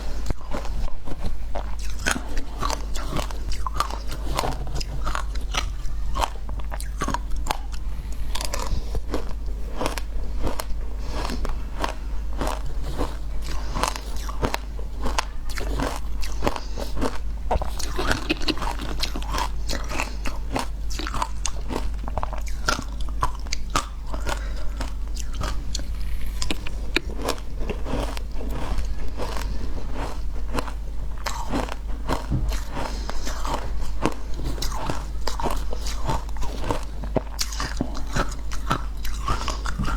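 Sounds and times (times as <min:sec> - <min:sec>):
person crunching ice: 0:08.3 - 0:39.8.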